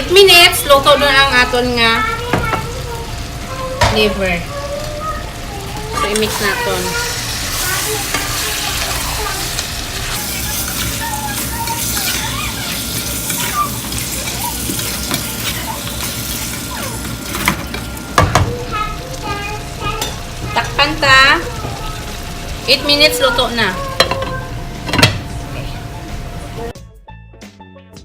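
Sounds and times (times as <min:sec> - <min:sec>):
food sizzling in a pan: 0:00.0 - 0:26.8
spoon knocking against pan: 0:02.3 - 0:02.7, 0:17.4 - 0:18.6, 0:24.0 - 0:25.2.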